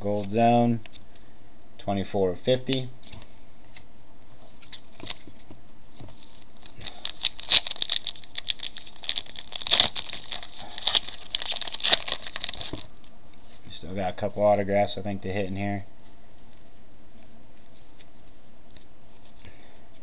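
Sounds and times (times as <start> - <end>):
foil wrapper crinkling and tearing: 6.1 - 13.1.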